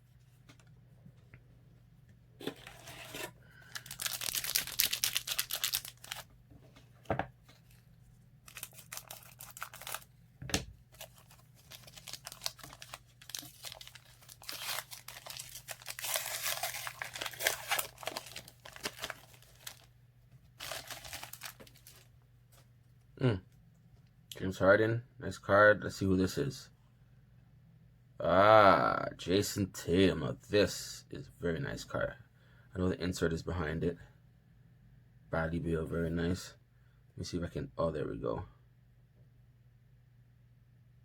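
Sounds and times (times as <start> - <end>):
plastic wrapper crinkling: 3.6 - 6.3, 7.5 - 10.1, 10.9 - 19.9, 20.6 - 22.1.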